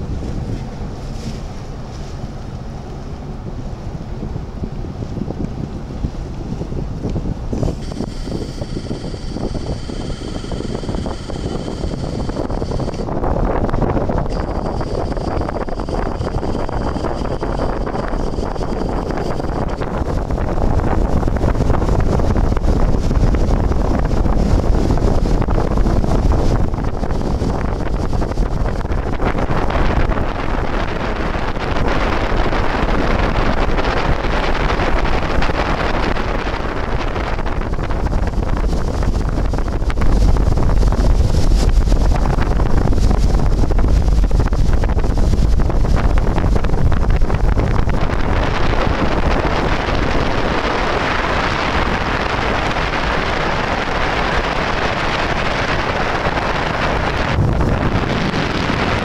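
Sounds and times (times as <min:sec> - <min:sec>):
hydrofoil engine and water rush: 0:00.0 - 0:59.0
wind buffeting microphone: 0:00.0 - 0:59.0.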